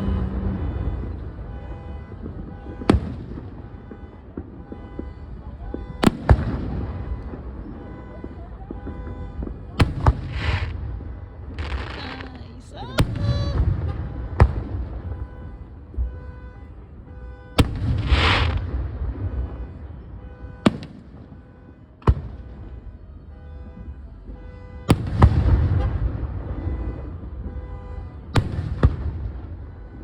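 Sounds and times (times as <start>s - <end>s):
rolling booms: 0.0s - 21.4s
fireworks bangs: 0.0s - 30.0s.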